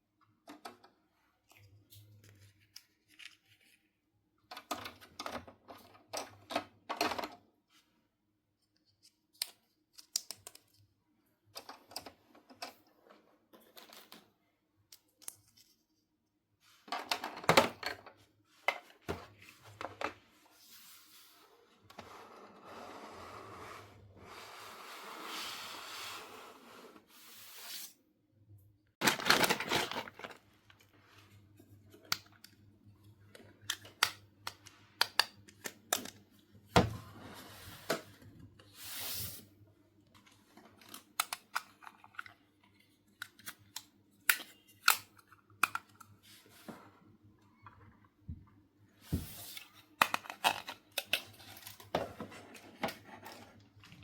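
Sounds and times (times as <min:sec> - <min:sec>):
plastic crackles: 0:29.0 - 0:30.8
plastic wrapping rustling: 0:29.0 - 0:30.8.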